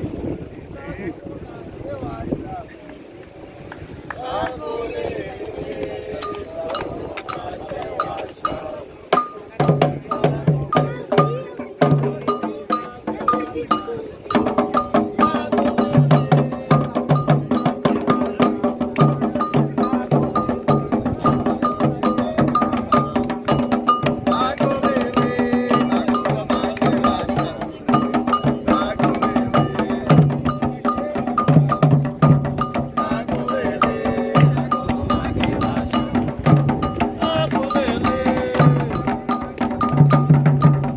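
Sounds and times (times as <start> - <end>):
hand drums playing fast rhythm: 6.2 - 40.9
ringing metal bell: 36.8 - 38.1, 38.8 - 40.7.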